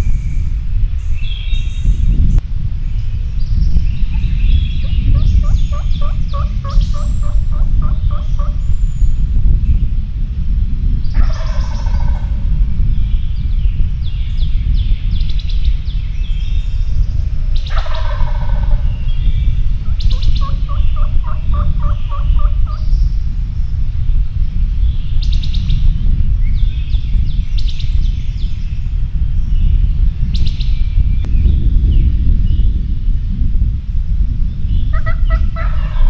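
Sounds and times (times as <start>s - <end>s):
songbirds chirping: 0.0s - 9.9s, 11.0s - 32.7s
steady low rumble: 0.0s - 36.0s
turkey gobbling: 5.2s - 8.6s, 11.2s - 12.4s, 17.7s - 19.0s, 19.8s - 22.8s, 35.0s - 36.0s
turkey yelping: 5.4s - 8.6s, 17.7s - 18.8s, 20.1s - 22.8s, 35.0s - 36.0s.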